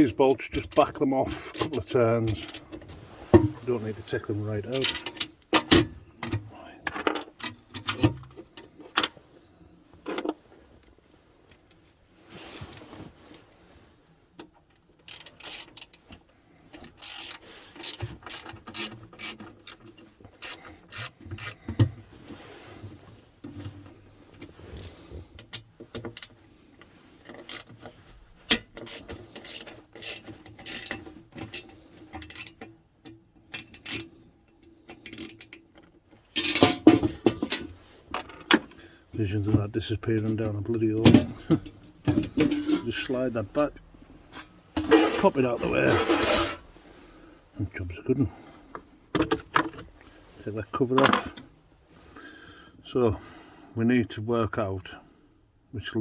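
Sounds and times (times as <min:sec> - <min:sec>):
hand tool backing off bolts: 0:16.8 - 0:22.0
metal rubbing on metal and plastic: 0:16.9 - 0:21.7, 0:41.2 - 0:46.8.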